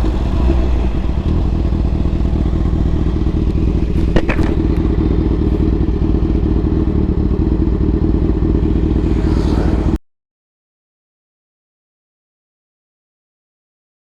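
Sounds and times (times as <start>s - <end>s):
motorcycle engine running steadily: 0.0s - 10.0s.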